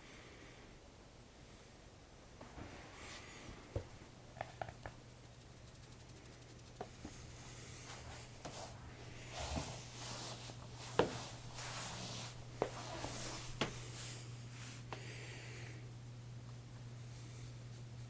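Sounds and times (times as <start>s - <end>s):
steady low hum: 0.0s - 18.0s
cat rustling and scratching: 5.8s - 14.8s.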